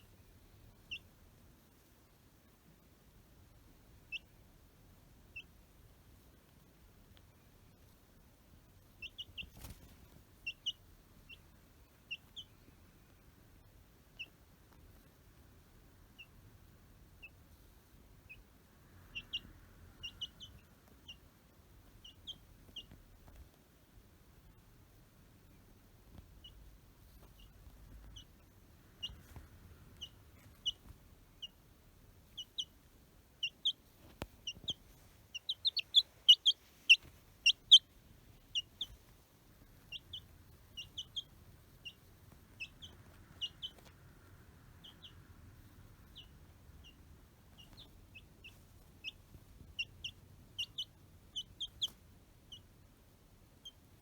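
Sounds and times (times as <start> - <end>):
baby chicks peeping: 0.0 - 54.0.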